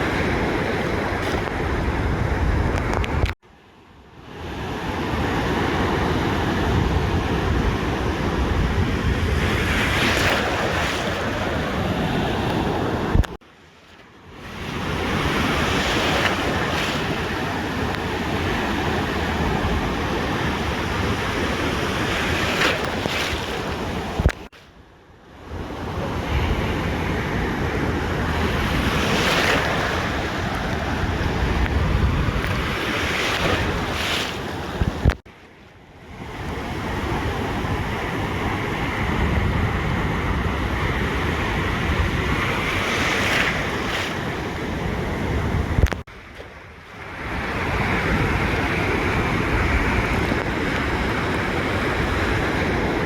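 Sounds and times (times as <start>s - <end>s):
ocean surf washing onto beach: 0.0s - 3.4s, 4.1s - 24.7s, 25.4s - 53.0s
wind buffeting microphone: 0.0s - 3.4s, 5.1s - 13.4s, 25.6s - 35.2s, 36.1s - 53.0s.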